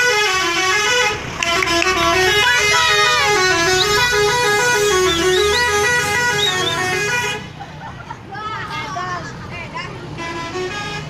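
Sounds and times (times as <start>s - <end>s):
bus musical horn tune: 0.0s - 7.5s, 10.1s - 11.0s.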